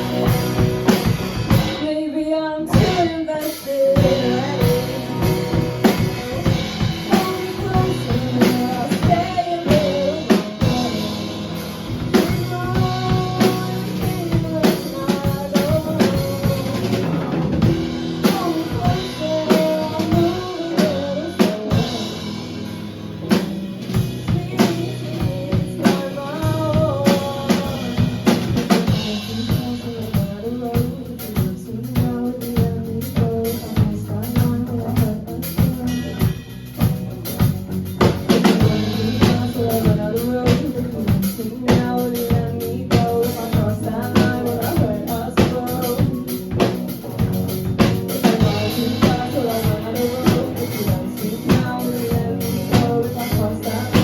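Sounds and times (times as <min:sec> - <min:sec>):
song with vocals and drums: 0:00.0 - 0:54.0.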